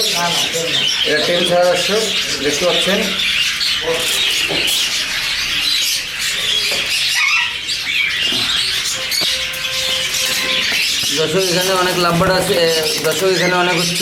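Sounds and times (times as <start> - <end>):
parrots chirping and squawking: 0.0 - 14.0.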